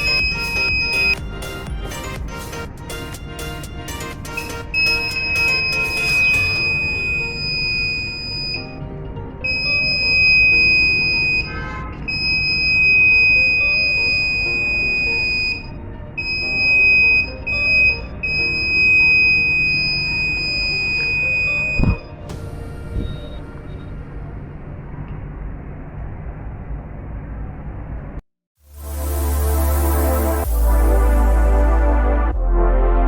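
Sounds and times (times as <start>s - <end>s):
high-pitched buzzer tone: 0.0s - 2.2s, 4.6s - 8.8s, 9.4s - 24.0s.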